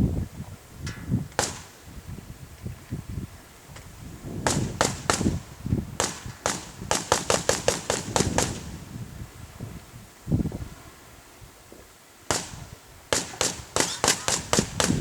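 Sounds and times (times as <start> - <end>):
sharp cracking bangs: 1.3 - 1.8, 4.4 - 8.7, 12.3 - 15.0.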